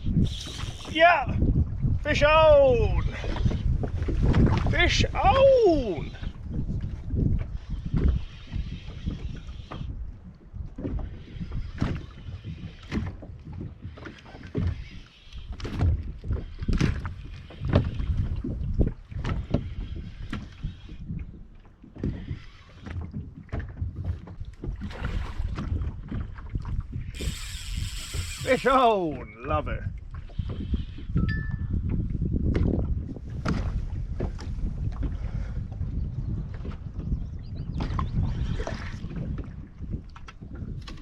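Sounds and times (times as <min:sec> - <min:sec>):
wind rumbling on microphone: 0:00.0 - 0:41.0
knocks in a plastic boat: 0:31.9 - 0:35.2.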